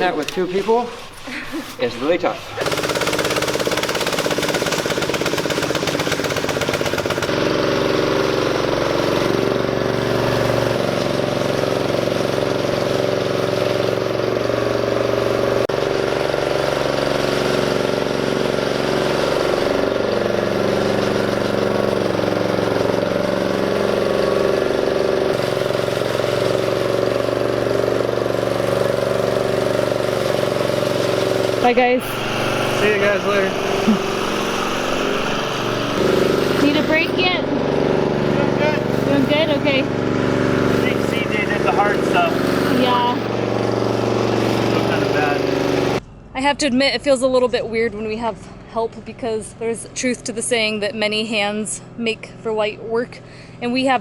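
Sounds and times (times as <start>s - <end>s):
small gasoline engine running: 0.0s - 46.0s, 49.6s - 54.0s.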